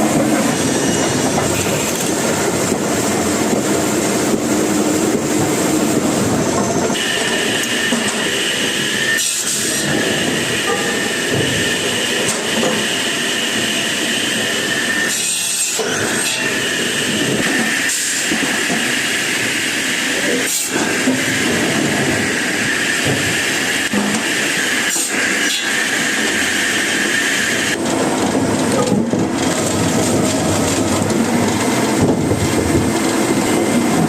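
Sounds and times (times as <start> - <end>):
log-peeling machinery clattering: 27.8 - 34.0.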